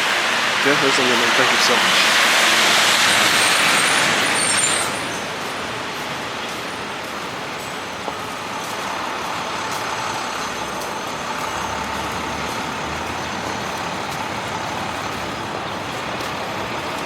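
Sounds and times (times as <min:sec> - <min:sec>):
city street traffic: 0:00.0 - 0:17.0
heavy vehicle rumbling past: 0:08.8 - 0:17.0.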